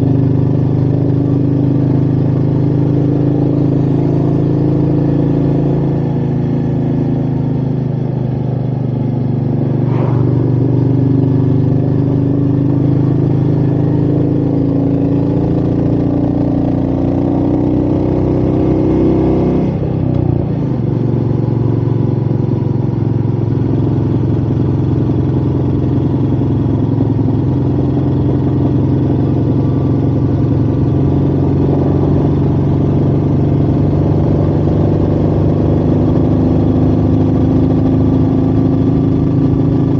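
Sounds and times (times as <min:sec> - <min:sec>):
wind rushing past: 0:09.8 - 0:11.0.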